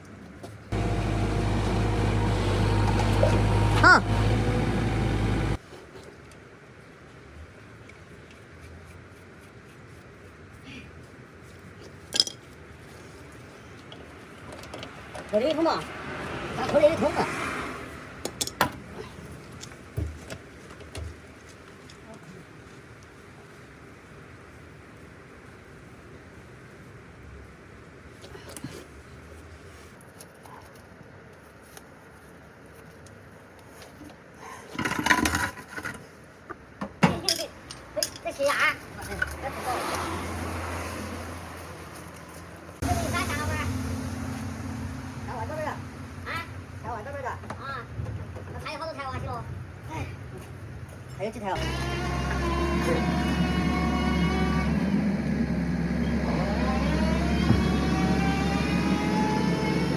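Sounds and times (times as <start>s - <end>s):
engine running: 0.7s - 5.6s, 39.1s - 47.8s, 51.5s - 59.9s
metal parts clattering: 12.1s - 12.4s.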